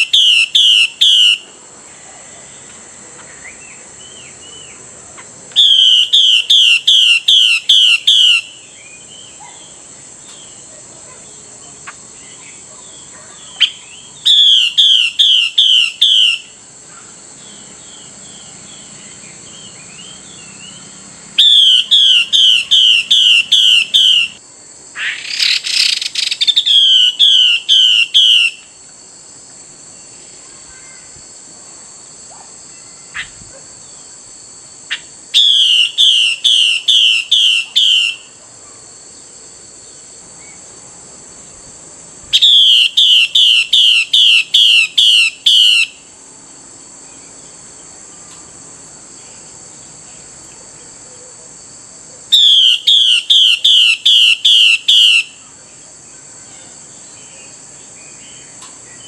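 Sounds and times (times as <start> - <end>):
bird whistled call: 0.0 - 1.4, 5.6 - 9.5, 13.5 - 16.6, 21.4 - 24.4, 25.0 - 28.6, 34.9 - 38.3, 42.4 - 46.0, 52.3 - 55.3
steady high hiss: 0.0 - 59.0.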